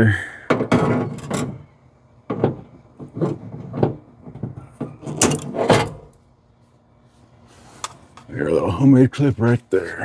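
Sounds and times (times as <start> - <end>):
tools clicking and clunking: 0.5 - 6.2.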